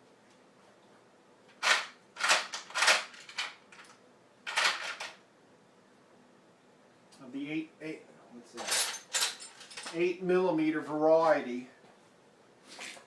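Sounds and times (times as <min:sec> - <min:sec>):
metal sockets and tools clattering: 0:08.6 - 0:10.0.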